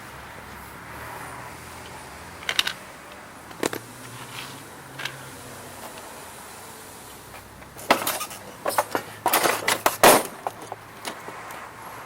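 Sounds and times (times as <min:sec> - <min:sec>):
tools clinking and knocking: 0:07.6 - 0:11.3.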